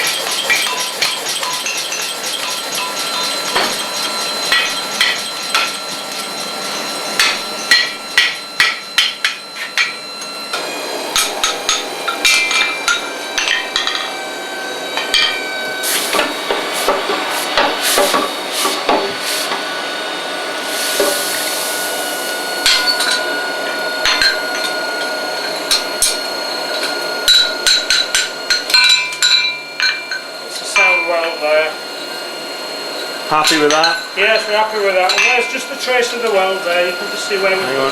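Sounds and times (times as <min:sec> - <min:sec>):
anvil ringing: 0:00.0 - 0:06.0, 0:07.2 - 0:10.0, 0:27.3 - 0:31.3, 0:33.3 - 0:36.2
hammer striking iron on anvil: 0:04.5 - 0:05.8, 0:07.2 - 0:10.0, 0:11.1 - 0:14.1, 0:22.6 - 0:23.2, 0:27.3 - 0:30.2, 0:33.4 - 0:34.5, 0:35.1 - 0:35.6.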